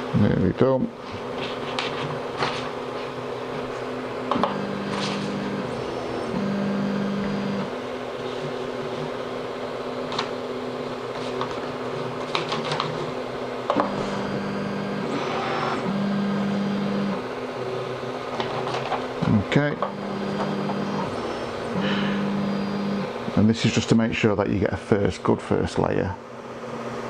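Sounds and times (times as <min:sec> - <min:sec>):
printer humming: 0:00.0 - 0:27.0
low motor tone: 0:04.4 - 0:07.8, 0:13.8 - 0:17.2, 0:19.8 - 0:23.2.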